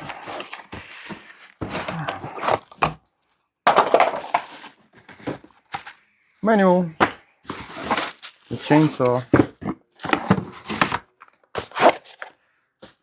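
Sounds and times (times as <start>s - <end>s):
cardboard box rustling and scraping: 0.0s - 2.9s, 3.8s - 5.9s, 7.0s - 12.3s.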